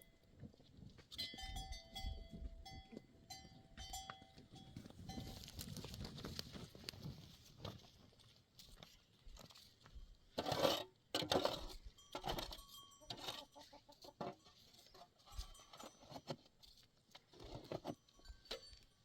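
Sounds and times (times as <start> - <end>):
chickens clucking: 13.3 - 14.3.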